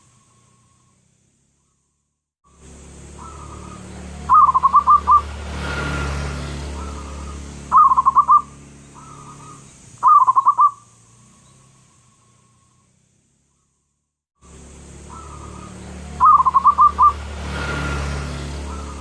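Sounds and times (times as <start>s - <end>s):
dove cooing: 3.2s - 5.3s, 6.7s - 10.8s, 15.0s - 17.2s.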